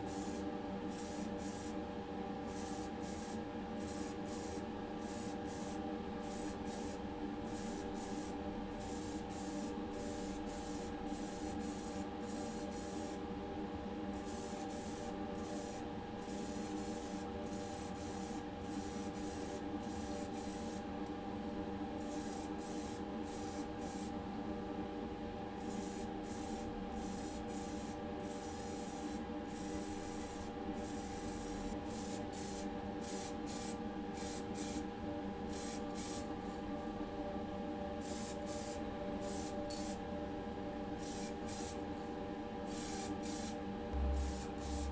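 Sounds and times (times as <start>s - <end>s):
mechanical hum with fixed tones: 0.0s - 44.9s
spray paint hissing bursts: 44.1s - 44.9s.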